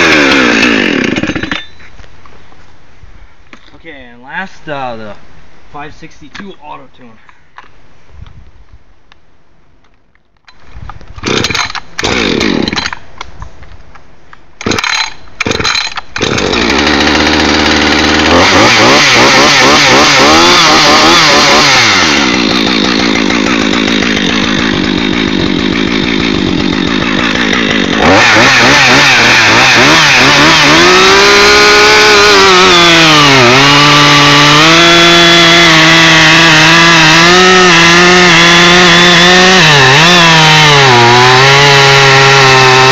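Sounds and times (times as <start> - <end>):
chainsaw starting and revving: 0.0 - 1.8, 11.2 - 13.0, 14.6 - 42.9.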